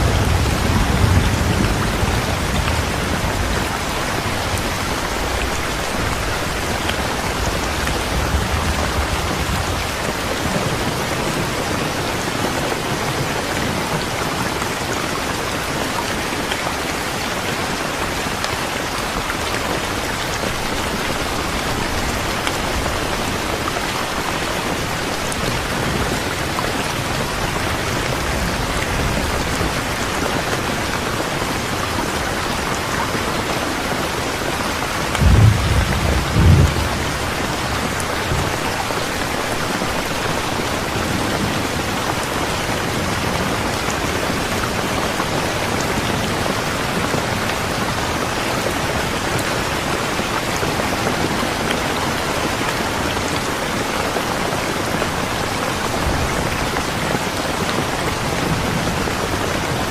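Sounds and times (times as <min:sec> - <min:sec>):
low rumble of thunder: 0:00.0 - 0:12.4, 0:35.0 - 0:42.1
steady rain falling: 0:00.0 - 0:59.9.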